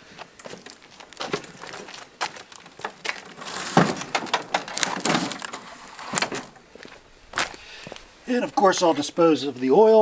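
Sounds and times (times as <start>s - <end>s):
scraping and rustling: 0.5s - 8.1s
sharp clicks and knocks: 1.2s - 6.6s.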